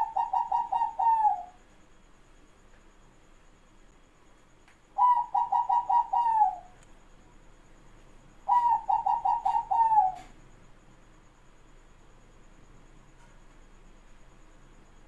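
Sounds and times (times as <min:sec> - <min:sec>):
dove cooing: 0:00.0 - 0:01.6, 0:05.0 - 0:06.8, 0:08.4 - 0:10.4.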